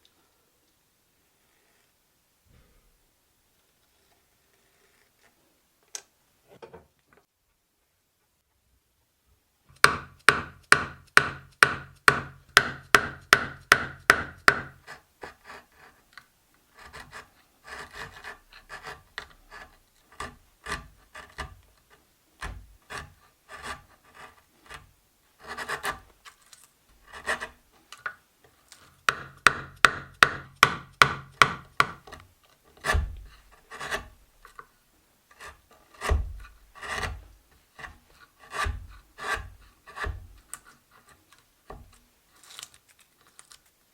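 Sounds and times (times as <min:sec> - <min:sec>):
hand tool rasping wood: 0:09.8 - 0:16.0, 0:16.7 - 0:26.1, 0:27.0 - 0:27.6, 0:28.8 - 0:34.2, 0:35.4 - 0:41.9
dull knocks: 0:36.0 - 0:36.5.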